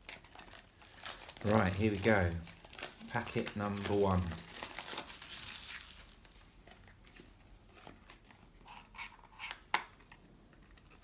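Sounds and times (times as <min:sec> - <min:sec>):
wrapper crinkling and tearing: 0:00.0 - 0:07.2.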